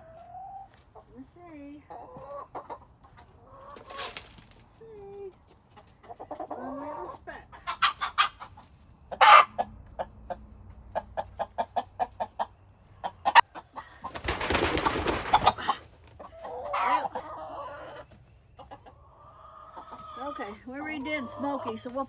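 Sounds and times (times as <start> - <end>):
chickens clucking: 0.0 - 22.0
chicken squawk: 6.0 - 10.3, 14.8 - 20.5.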